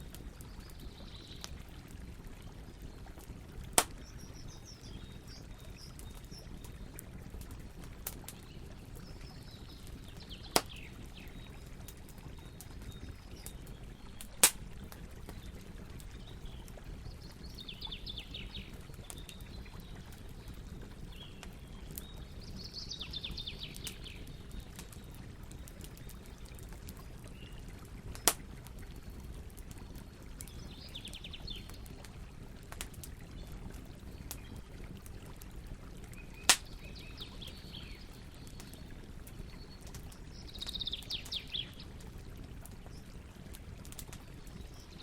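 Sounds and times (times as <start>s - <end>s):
campfire crackling: 0.0s - 45.0s
fire popping loudly: 3.7s - 4.2s, 10.3s - 16.2s, 28.1s - 28.9s, 36.2s - 37.0s.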